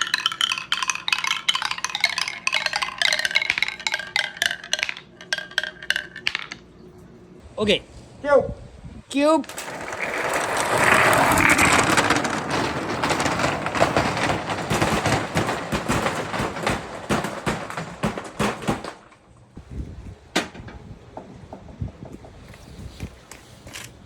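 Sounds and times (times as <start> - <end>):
balls rolling down a marble run: 0.0 - 6.7, 9.5 - 19.3
marbles clicking: 0.0 - 6.7.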